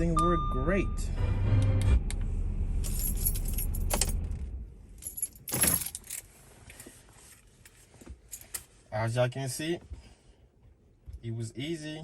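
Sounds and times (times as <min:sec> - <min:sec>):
keys jangling: 0:02.8 - 0:04.2, 0:05.0 - 0:06.9.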